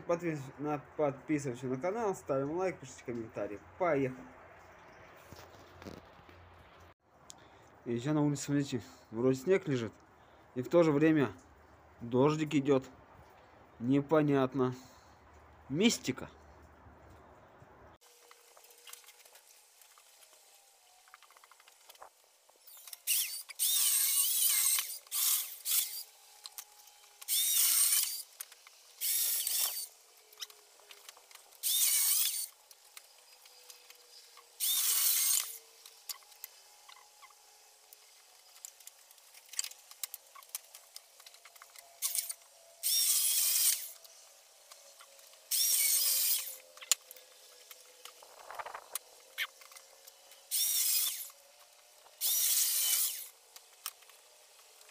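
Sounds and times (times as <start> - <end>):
power saw cutting firewood: 18.0 - 54.9.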